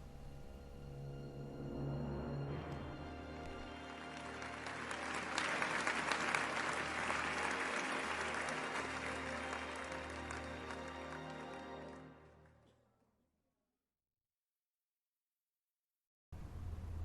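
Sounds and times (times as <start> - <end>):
soft background music: 0.0 - 12.6
audience applauding: 2.7 - 12.7.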